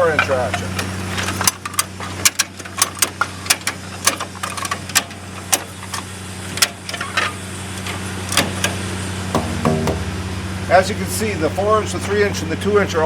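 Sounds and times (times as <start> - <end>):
low engine hum: 7.4 - 12.6.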